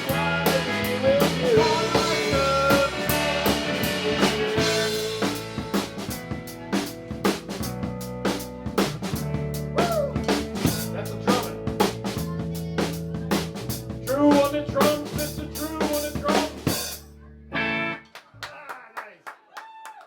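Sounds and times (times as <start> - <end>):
drum kit: 0.0 - 17.1
bass line: 0.0 - 18.0
lead guitar bending notes: 17.5 - 18.0.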